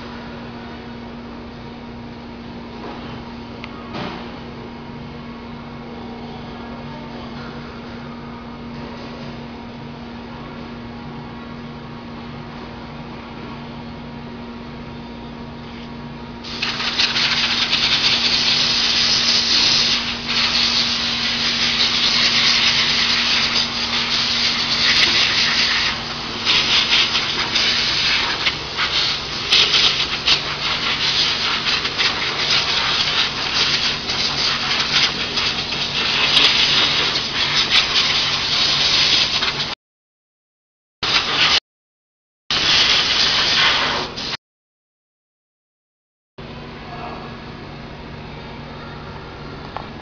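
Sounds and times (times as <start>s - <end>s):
low machine hum: 0.0s - 37.6s, 46.4s - 50.0s
loud uneven hissing: 16.5s - 39.6s.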